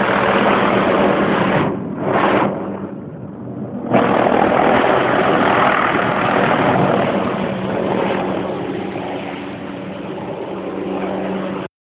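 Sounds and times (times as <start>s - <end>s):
helicopter overhead: 0.0s - 11.7s.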